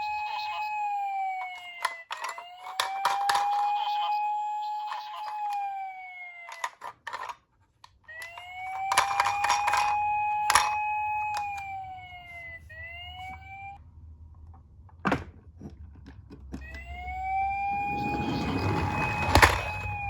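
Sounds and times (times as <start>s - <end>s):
toy electronic siren wailing: 0.0s - 7.4s, 8.1s - 13.8s, 16.6s - 20.0s
toy handling clicks and rattles: 1.3s - 11.7s.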